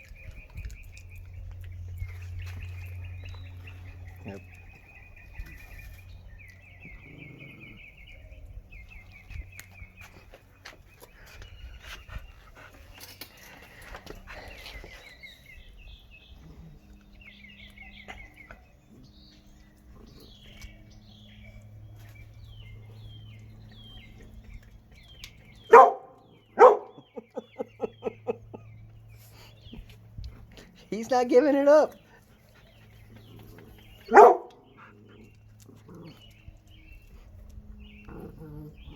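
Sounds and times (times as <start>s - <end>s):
dog barking: 25.7s - 27.0s, 34.1s - 34.6s.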